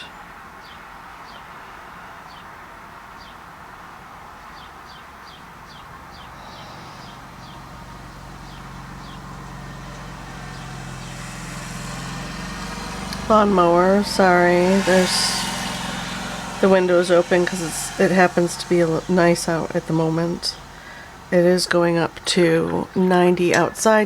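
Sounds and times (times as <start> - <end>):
small bird chirping: 4.5 - 23.8
lawnmower engine running: 5.7 - 24.0.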